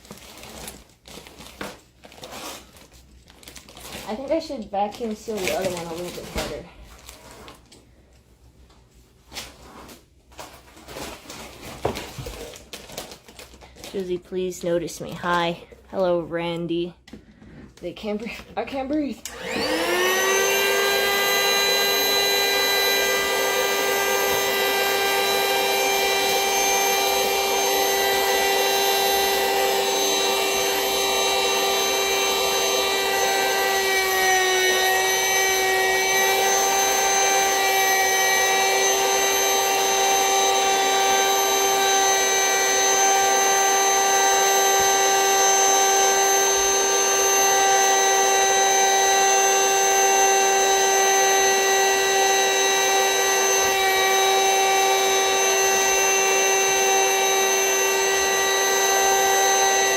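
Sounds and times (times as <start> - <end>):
vacuum cleaner motor whining: 3.9 - 7.1, 18.5 - 59.9.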